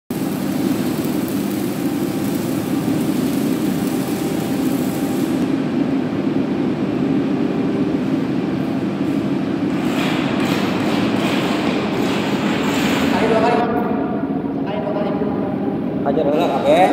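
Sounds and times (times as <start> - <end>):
machine rumbling: 0.1 - 16.8.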